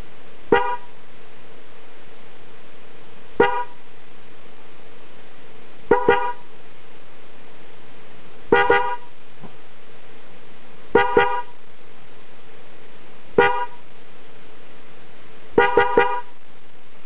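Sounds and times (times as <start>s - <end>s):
car horn toots: 0.5s - 0.9s, 3.4s - 3.8s, 5.9s - 6.4s, 8.5s - 9.1s, 11.0s - 11.6s, 13.4s - 13.8s, 15.6s - 16.4s.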